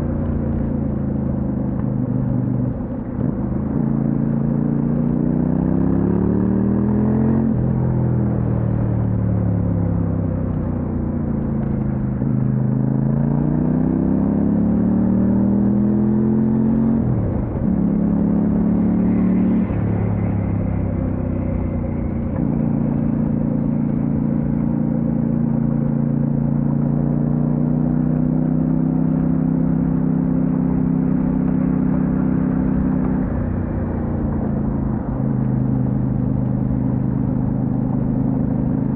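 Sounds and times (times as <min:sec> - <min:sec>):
motorcycle engine running: 0:14.2 - 0:38.9.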